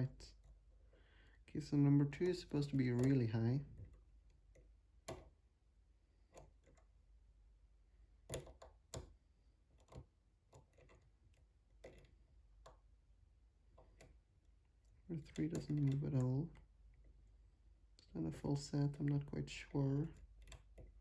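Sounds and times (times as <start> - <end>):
lock picking clicks: 8.2 - 9.2, 11.8 - 12.8.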